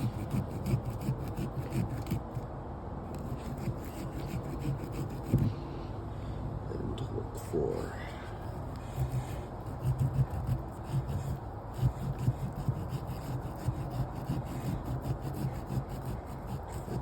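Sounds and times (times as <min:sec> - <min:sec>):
blade sawing into pumpkin: 0:00.0 - 0:02.4, 0:03.1 - 0:05.6, 0:08.8 - 0:17.0.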